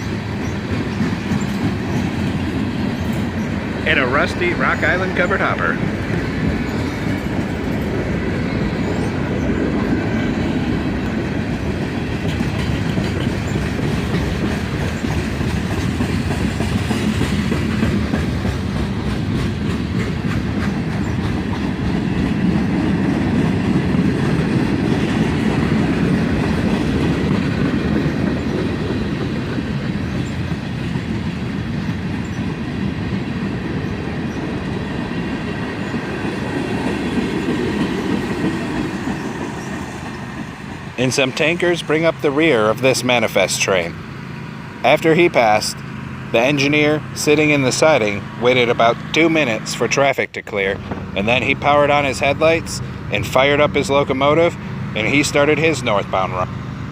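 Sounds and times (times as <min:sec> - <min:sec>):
steel wheels rumbling on rail: 0:00.0 - 0:56.9.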